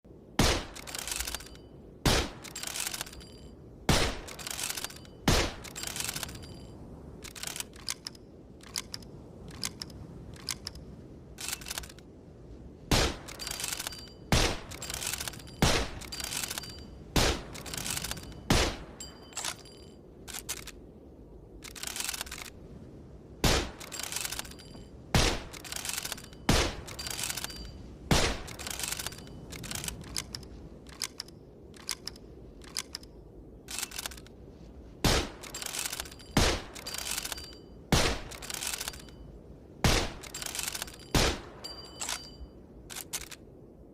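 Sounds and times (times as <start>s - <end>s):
rifle cracks: 0.4s - 6.6s, 23.4s - 33.1s, 35.0s - 39.2s
rifle bolt metallic clicks: 0.5s - 1.6s, 2.3s - 3.4s, 4.0s - 10.8s, 11.4s - 12.1s, 13.0s - 20.8s, 21.6s - 22.6s, 23.6s - 34.4s, 35.1s - 39.2s, 39.9s - 43.5s.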